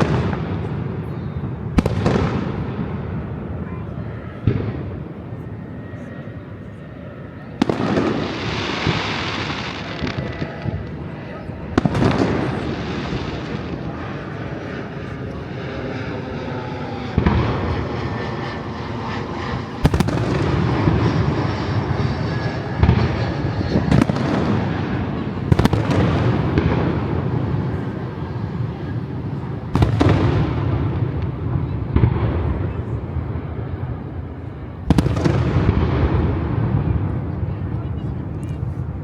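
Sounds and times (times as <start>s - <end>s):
rumble of explosions: 0.0s - 39.0s.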